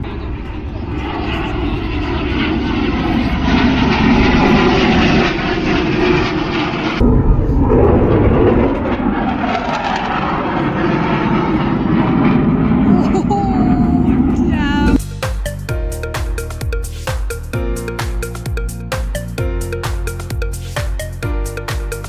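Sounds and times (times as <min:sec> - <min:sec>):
aircraft engine roar: 0:00.0 - 0:22.0.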